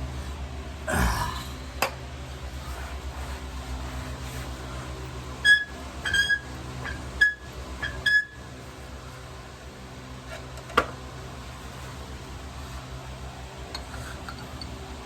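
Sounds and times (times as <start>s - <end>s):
steady low hum: 0.0s - 6.0s.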